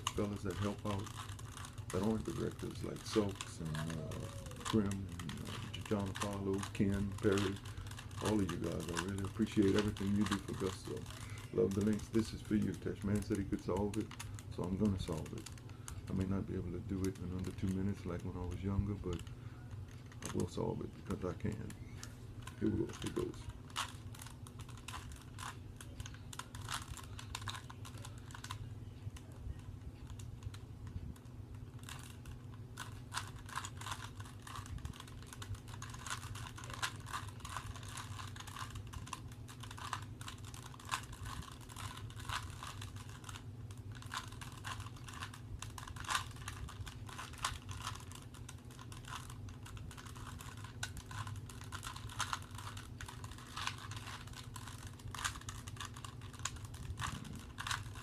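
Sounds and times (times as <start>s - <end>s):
puzzle cube clicking: 0.0s - 14.3s, 32.8s - 43.4s, 44.0s - 58.0s.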